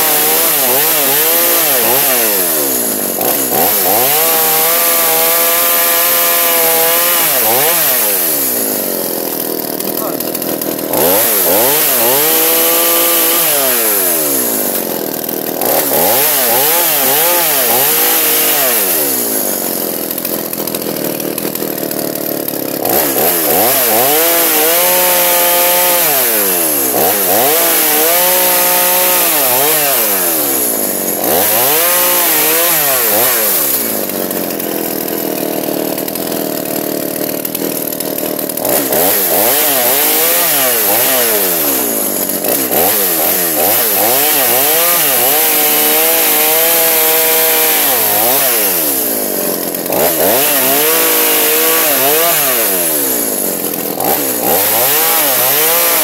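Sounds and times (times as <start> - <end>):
chainsaw cutting wood: 0.0 - 56.0
chainsaw revving: 0.0 - 56.0.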